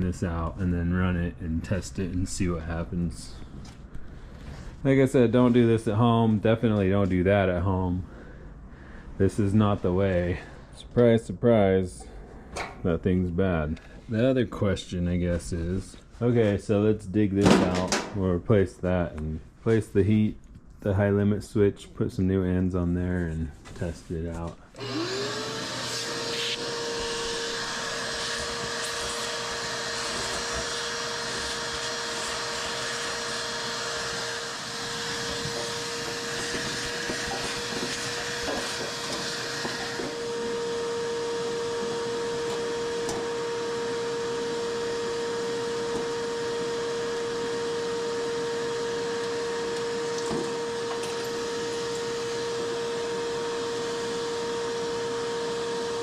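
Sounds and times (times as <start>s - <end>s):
vacuum cleaner whine: 24.8s - 56.0s.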